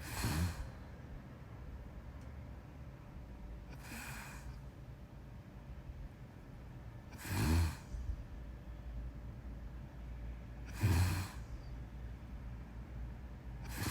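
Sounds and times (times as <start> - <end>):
person snoring: 0.0 - 0.8, 3.8 - 4.5, 7.2 - 7.9, 10.7 - 11.4, 13.7 - 13.9.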